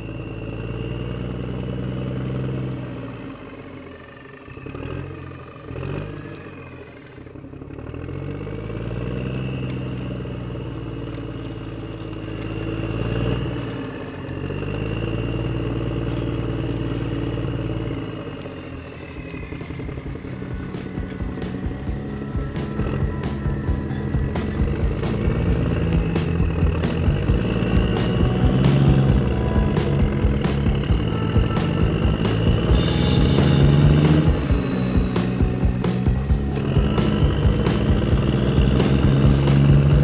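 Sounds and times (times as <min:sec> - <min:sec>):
model tractor engine: 0:00.0 - 0:40.0
high whine: 0:18.8 - 0:40.0.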